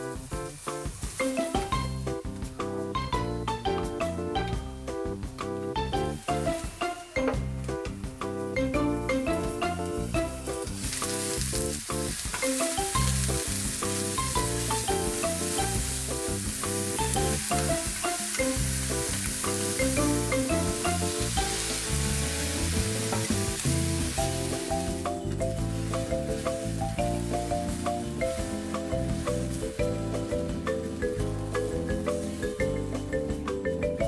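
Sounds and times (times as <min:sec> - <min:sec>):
background music: 0:00.0 - 0:34.0
food sizzling in oil: 0:10.3 - 0:31.0.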